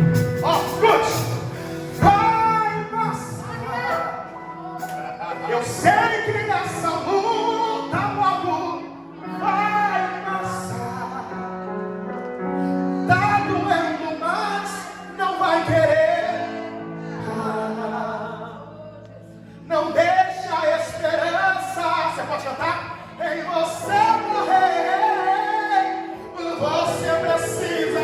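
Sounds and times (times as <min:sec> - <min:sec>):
band accompaniment: 0:00.0 - 0:08.4
person singing gospel: 0:00.0 - 0:28.0.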